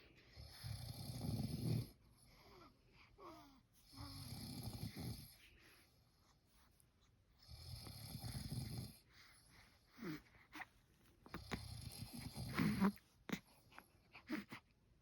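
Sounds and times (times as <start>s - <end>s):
man snoring: 0.6s - 1.9s, 7.5s - 9.0s.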